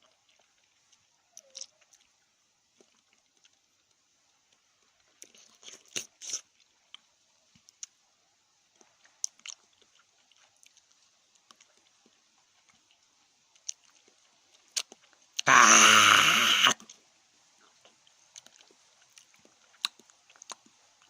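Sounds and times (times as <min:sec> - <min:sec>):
chewing with wet mouth clicks: 0:00.0 - 0:08.0, 0:08.7 - 0:15.5, 0:17.6 - 0:21.0.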